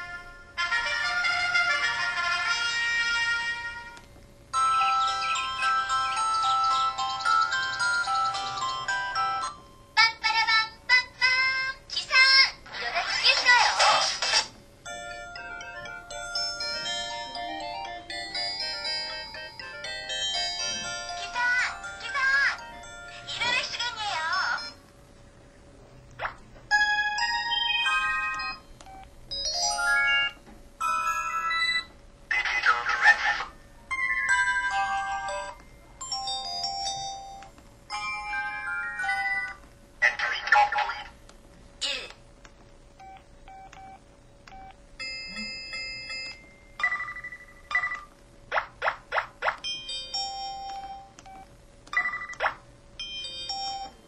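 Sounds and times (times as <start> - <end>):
electronic chime melodies: 4.6 - 9.6.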